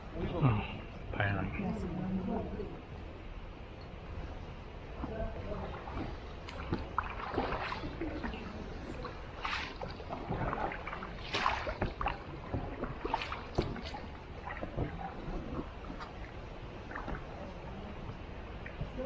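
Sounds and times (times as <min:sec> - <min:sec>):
paddles splashing in water: 0:05.0 - 0:19.0.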